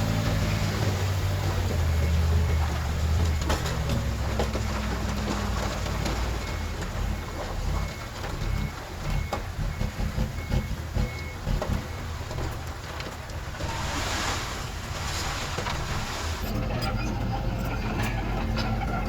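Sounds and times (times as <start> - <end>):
backup alarm beeping: 0.0 - 12.1
machinery knocks and clanks: 0.0 - 14.1
heavy diesel machinery running: 0.0 - 19.0.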